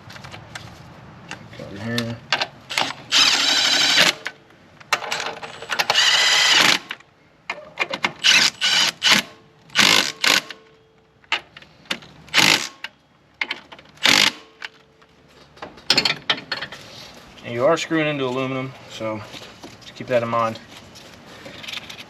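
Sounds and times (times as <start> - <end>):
impact wrench driving bolts: 5.0 - 7.0, 7.8 - 10.6, 12.3 - 13.0, 14.0 - 14.8.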